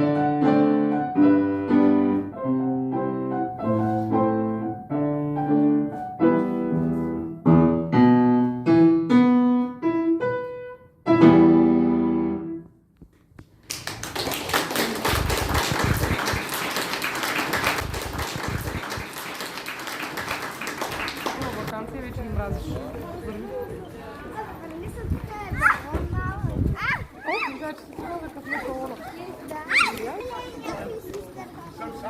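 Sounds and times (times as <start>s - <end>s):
piano chords: 0.0s - 12.7s
audience applauding: 13.6s - 21.7s.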